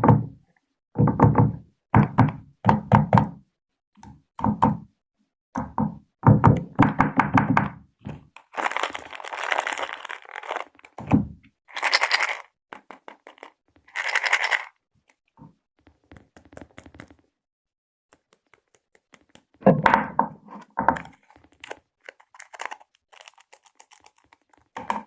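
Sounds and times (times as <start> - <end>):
crinkly rustling: 8.4 - 11.1, 11.7 - 14.7, 21.0 - 25.0
tapping on candy can: 8.4 - 11.1, 11.7 - 14.7, 20.9 - 25.0.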